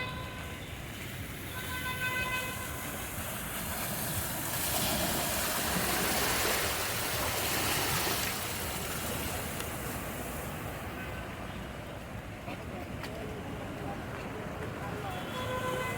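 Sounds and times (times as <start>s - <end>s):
vehicle horn beep: 0.0s - 0.7s, 1.5s - 3.0s, 15.1s - 15.9s
vehicle driving through water: 2.8s - 10.9s.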